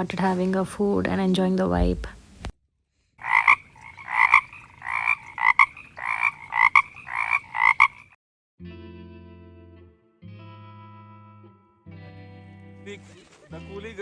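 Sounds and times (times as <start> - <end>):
frog croaking: 3.2 - 8.2.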